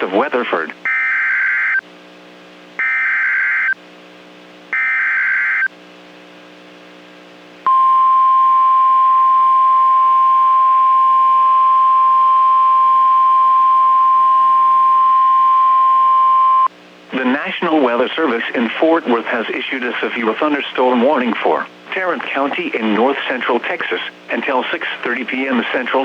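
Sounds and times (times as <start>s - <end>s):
steady warning alarm tone: 2.8s - 3.8s, 4.8s - 5.7s.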